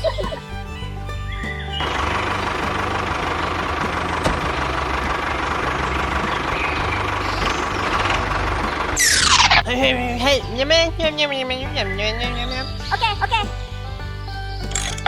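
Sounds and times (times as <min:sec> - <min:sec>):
small engine running: 0:00.0 - 0:11.1.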